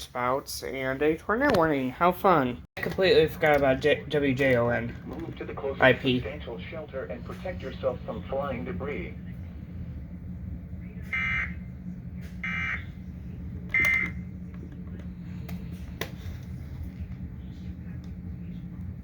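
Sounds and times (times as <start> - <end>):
steady low hum: 0.1 - 19.0.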